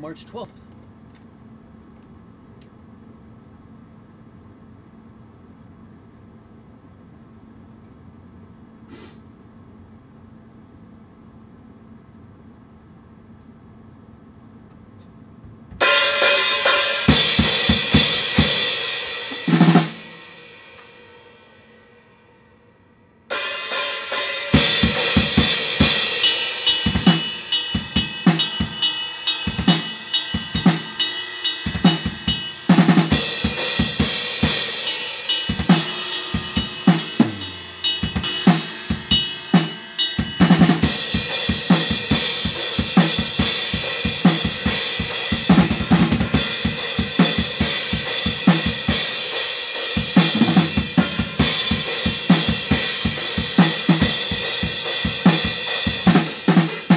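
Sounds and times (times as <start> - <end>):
crashing cymbals: 15.8 - 22.4, 23.3 - 56.9
recorded heavy band song: 24.5 - 56.9
bass drum strokes: 35.5 - 49.0, 50.0 - 56.2.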